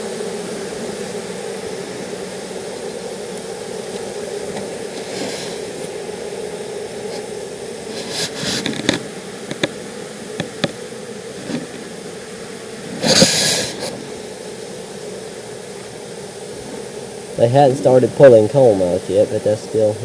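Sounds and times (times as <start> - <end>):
honeybees humming: 0.0 - 20.0
short burst of hiss: 7.9 - 8.9, 12.9 - 14.0.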